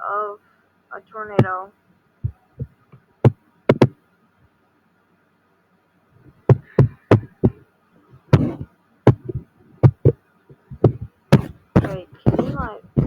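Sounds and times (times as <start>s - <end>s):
computer clicks and knocks: 3.7s - 4.0s.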